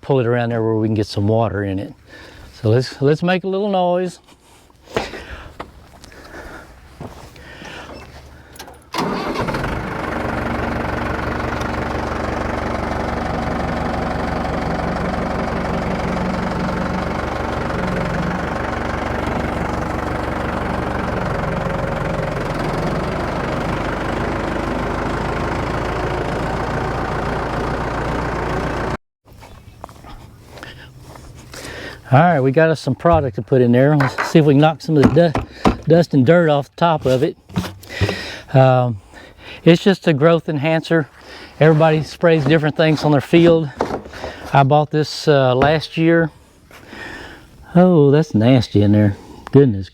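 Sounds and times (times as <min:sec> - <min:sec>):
tractor engine starting and running: 0:06.8 - 0:36.1, 0:37.0 - 0:38.7, 0:39.6 - 0:47.7.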